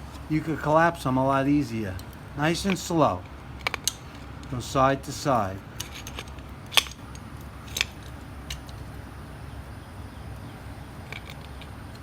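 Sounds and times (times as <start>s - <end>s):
low steady hum: 0.0s - 12.0s
screwdriver clicking on metal: 2.0s - 4.6s, 5.8s - 8.8s.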